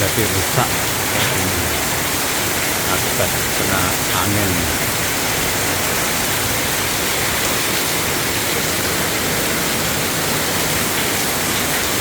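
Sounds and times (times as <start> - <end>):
heavy rain pouring: 0.0 - 12.0.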